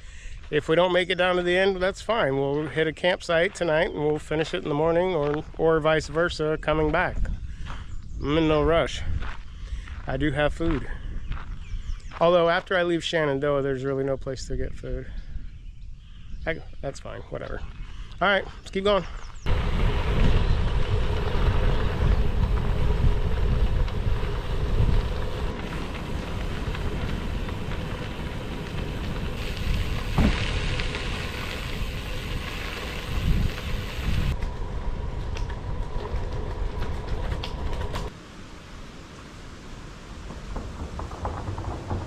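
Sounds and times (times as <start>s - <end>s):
bike tyres rolling on gravel: 0.5s - 12.8s, 17.4s - 42.0s
wind rumble on microphone: 5.4s - 12.1s, 19.2s - 38.1s.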